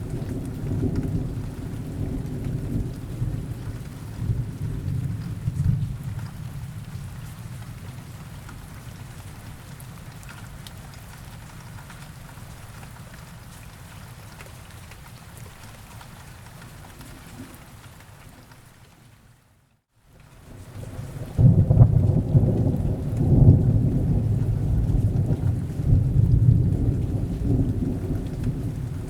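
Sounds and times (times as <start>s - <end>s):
steady rain: 0.0s - 29.0s
low thunder rumble: 20.8s - 29.0s.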